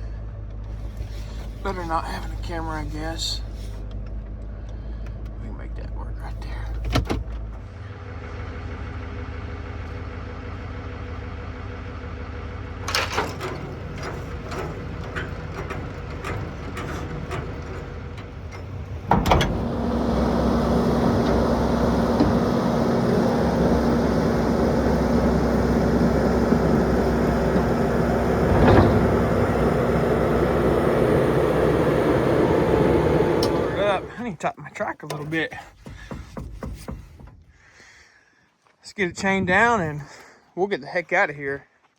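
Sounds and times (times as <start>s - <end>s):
skid steer engine running: 7.4s - 34.3s
metallic clanks: 12.8s - 34.1s.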